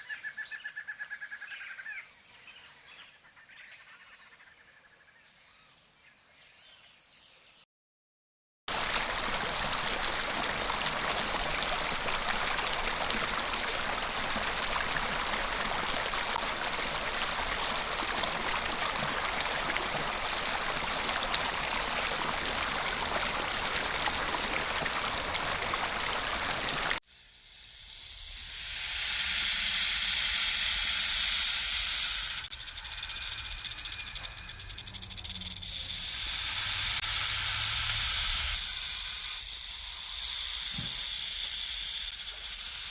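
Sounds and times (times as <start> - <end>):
rushing water: 8.7 - 27.0
high hiss: 27.0 - 42.9.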